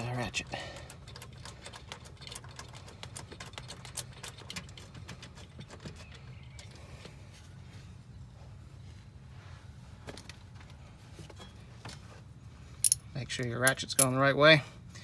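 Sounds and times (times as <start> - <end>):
low steady hum: 0.0 - 15.0.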